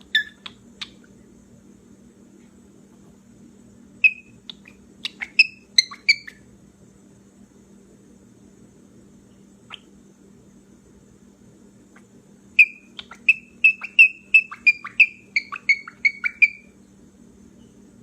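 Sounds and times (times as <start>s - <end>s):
cockatiel squeaking: 0.0s - 1.0s, 4.0s - 6.4s, 12.6s - 16.7s
faint steady hum: 0.0s - 18.0s.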